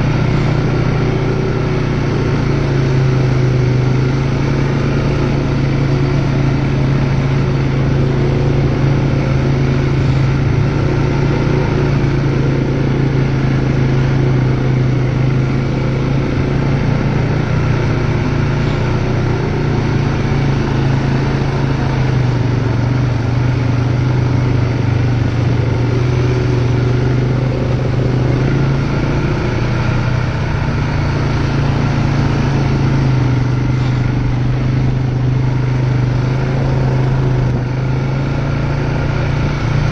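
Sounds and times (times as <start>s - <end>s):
quad bike engine running: 0.0s - 39.9s
wind: 0.0s - 39.9s.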